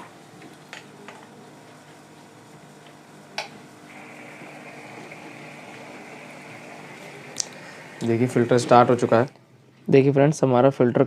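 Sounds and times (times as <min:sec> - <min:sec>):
aquarium filter running water: 0:03.4 - 0:09.4.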